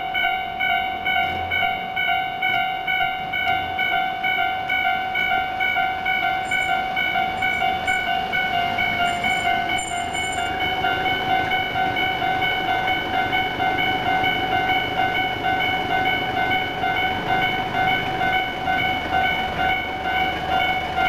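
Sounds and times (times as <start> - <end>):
electric train rumble: 0.0 - 21.0
level crossing electronic bell: 6.1 - 10.8.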